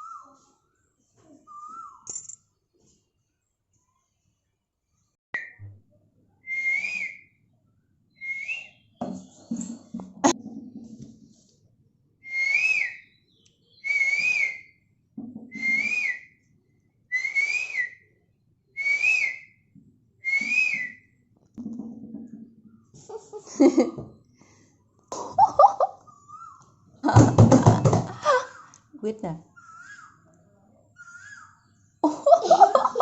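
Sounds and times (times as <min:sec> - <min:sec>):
girl whistling bird call: 0:00.0 - 0:00.4, 0:01.5 - 0:02.1, 0:06.5 - 0:07.3, 0:08.2 - 0:08.9, 0:12.3 - 0:14.8, 0:15.5 - 0:16.4, 0:17.1 - 0:18.1, 0:18.8 - 0:19.6, 0:20.2 - 0:21.1, 0:26.0 - 0:26.7, 0:29.6 - 0:30.3, 0:31.0 - 0:31.6.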